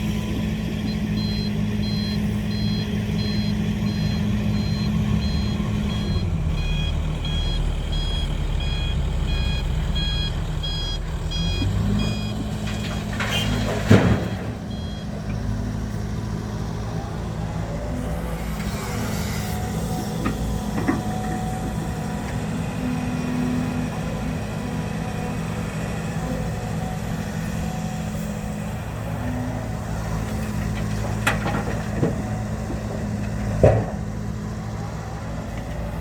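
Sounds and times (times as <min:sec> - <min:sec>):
diesel engine running: 0:00.0 - 0:36.0
truck reversing beeper: 0:00.0 - 0:36.0.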